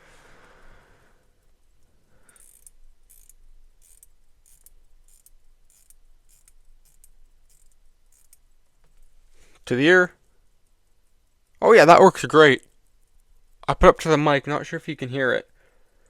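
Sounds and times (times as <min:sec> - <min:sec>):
watch winding ratchet clicks: 0:01.4 - 0:08.7.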